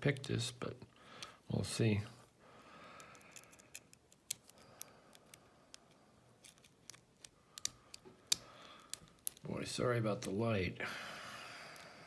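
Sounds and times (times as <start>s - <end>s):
lock pick clicking in padlock: 3.0s - 5.4s, 6.4s - 9.4s.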